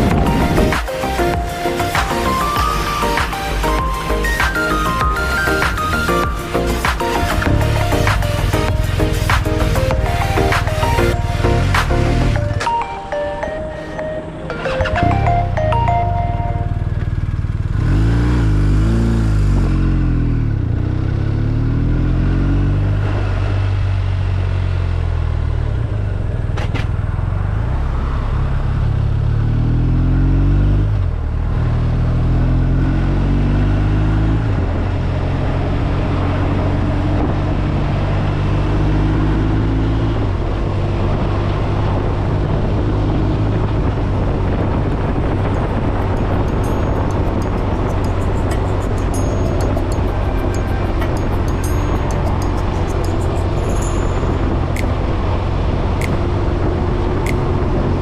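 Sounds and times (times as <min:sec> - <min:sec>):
motorcycle engine revving: 0:16.8 - 0:58.0.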